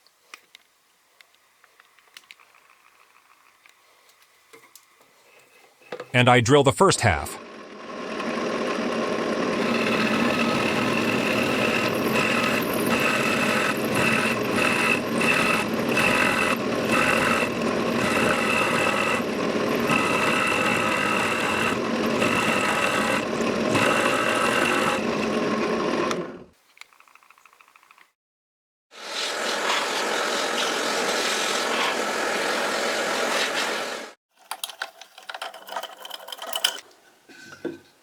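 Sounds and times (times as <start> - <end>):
high cutter whine: 7.4 - 25.4
drill press cutting wood: 9.2 - 26.5.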